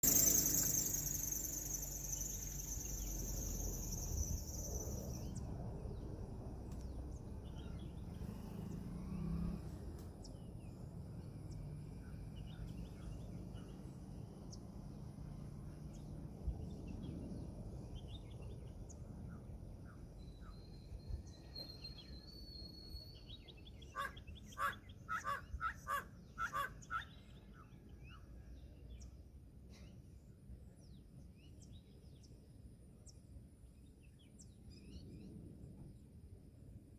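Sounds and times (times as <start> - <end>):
bird calling: 0.0 - 5.3.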